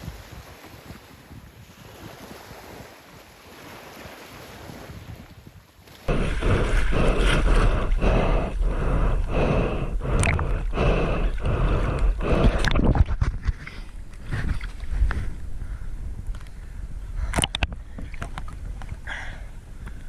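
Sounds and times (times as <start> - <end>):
wind buffeting microphone: 0.0 - 3.2, 3.8 - 20.0
rhythmic whooshing: 6.1 - 12.4.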